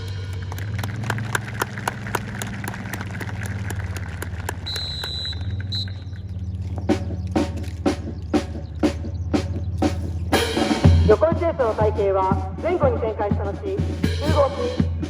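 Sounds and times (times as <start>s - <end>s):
drum hits: 6.7s - 15.0s.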